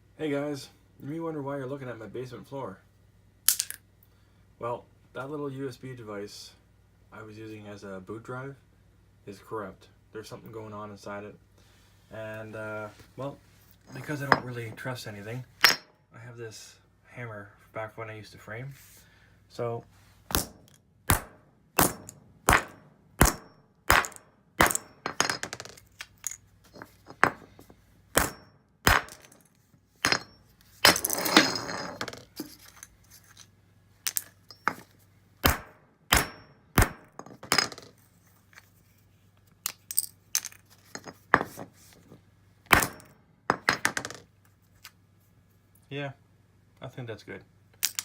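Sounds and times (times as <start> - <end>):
gritty scraping: 12.4 - 15.3.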